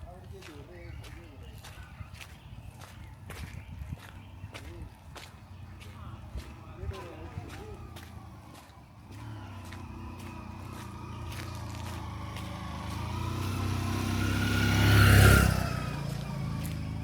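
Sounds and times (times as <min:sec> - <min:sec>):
vehicle engine passing by: 0:04.6 - 0:17.0.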